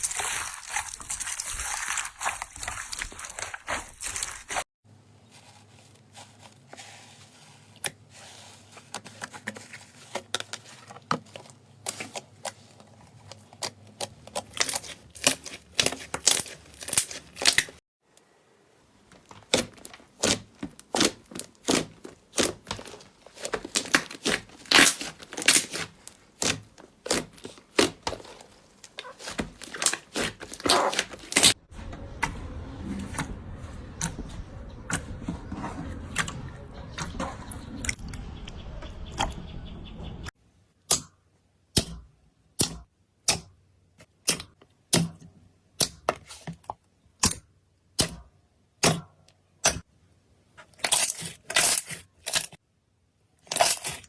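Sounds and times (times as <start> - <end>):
slime crackling and popping: 0.0 - 4.6, 14.5 - 17.8, 19.4 - 31.6
slime squishing: 0.0 - 17.8, 18.9 - 31.6.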